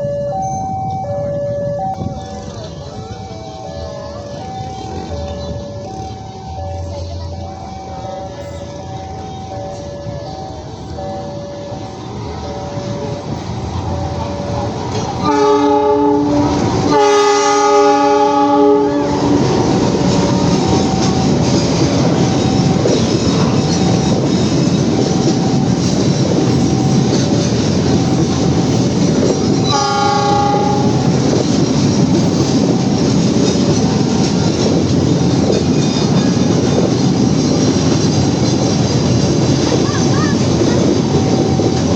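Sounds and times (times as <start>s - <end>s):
train running noise: 0.0s - 41.9s
locomotive chime horn blasts: 15.2s - 19.5s, 29.6s - 31.2s.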